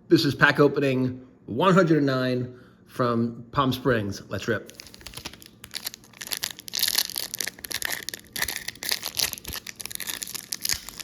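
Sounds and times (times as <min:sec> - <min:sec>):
wrapper ripping and crinkling: 0:04.6 - 0:11.0.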